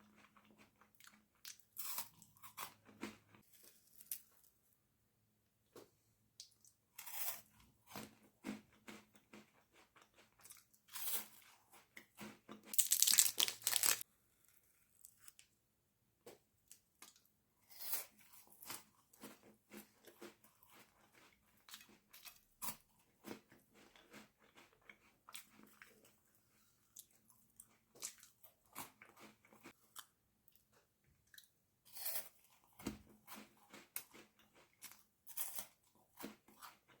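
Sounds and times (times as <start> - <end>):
crackly chewing: 8.0 - 15.5, 33.3 - 37.0
crunchy bites: 12.7 - 14.0.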